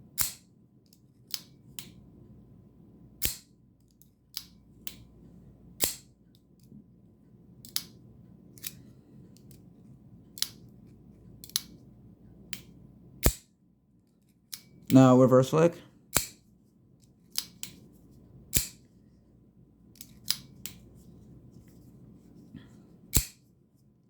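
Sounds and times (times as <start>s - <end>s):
folding knife snapping open: 18.5s - 18.8s, 23.2s - 23.4s.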